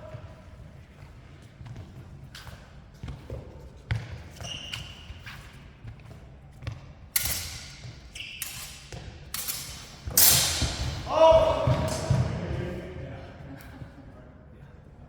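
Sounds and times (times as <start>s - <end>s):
steel swords clashing and ringing: 7.2s - 11.1s.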